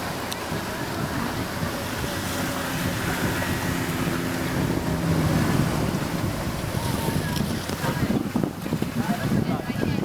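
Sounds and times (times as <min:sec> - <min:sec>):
boat engine hum: 0:00.0 - 0:10.0
water rushing: 0:00.0 - 0:10.0
wind buffeting microphone: 0:00.0 - 0:10.0.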